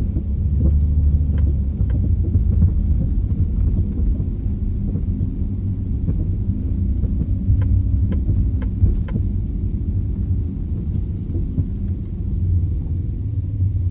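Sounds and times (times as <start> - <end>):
road and drivetrain rumble: 0.0 - 13.9
sharp ticks or knocks: 0.1 - 5.3.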